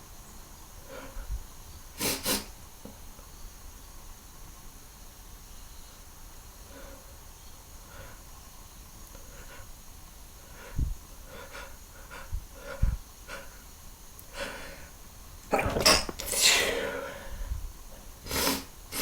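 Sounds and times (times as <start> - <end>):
man sneezing: 15.5 - 17.1.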